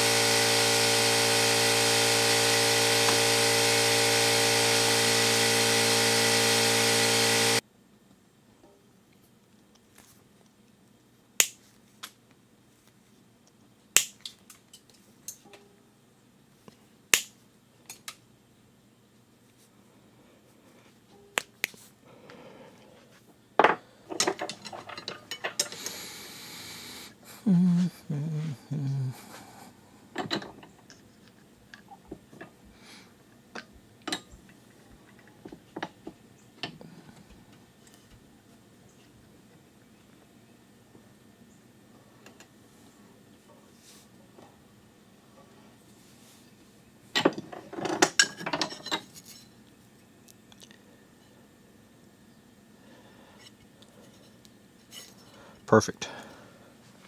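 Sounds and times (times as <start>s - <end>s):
hand tools clicking and snapping: 11.4s - 12.2s.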